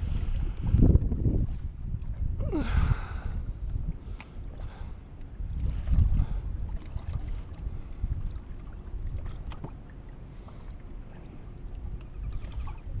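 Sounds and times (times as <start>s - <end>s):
wind rumble on microphone: 0.0s - 13.0s.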